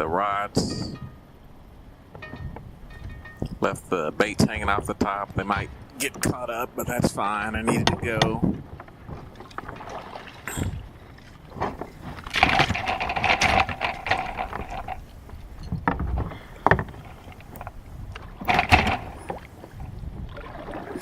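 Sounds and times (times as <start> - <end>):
fishing gear knocking: 2.1 - 20.3
scraping and rustling: 2.2 - 21.0.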